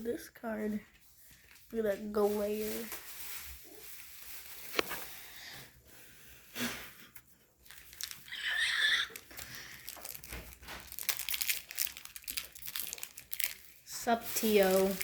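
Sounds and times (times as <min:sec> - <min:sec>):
plastic wrappers crinkling: 0:00.9 - 0:05.3, 0:07.6 - 0:15.0.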